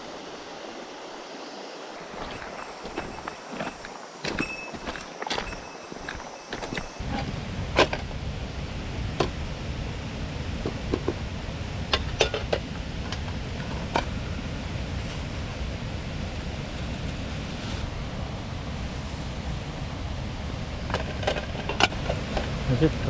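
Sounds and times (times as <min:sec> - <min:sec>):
low rushing noise: 0:06.1 - 0:23.0.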